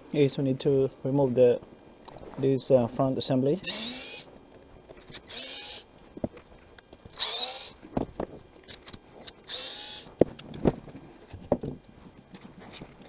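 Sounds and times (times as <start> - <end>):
power screwdriver whirring: 3.6 - 4.3, 5.0 - 5.9, 7.1 - 7.8, 8.7 - 10.1.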